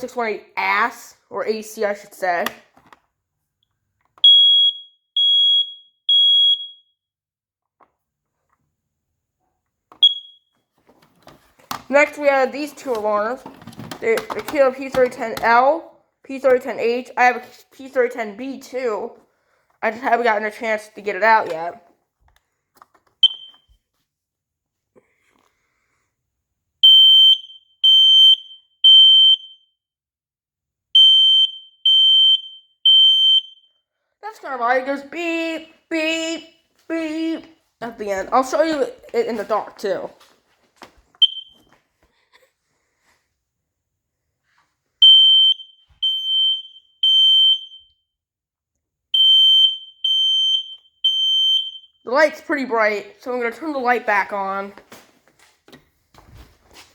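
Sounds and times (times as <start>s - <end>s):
smoke alarm beeping: 4.2s - 7.0s, 10.0s - 10.6s, 23.2s - 23.8s, 26.8s - 29.7s, 31.0s - 33.8s, 41.2s - 41.7s, 45.0s - 48.0s, 49.1s - 52.3s
smoke alarm chirp: 4.2s - 7.0s, 10.0s - 10.6s, 23.2s - 23.8s, 26.8s - 29.7s, 31.0s - 33.8s, 41.2s - 41.7s, 45.0s - 48.0s, 49.1s - 52.1s.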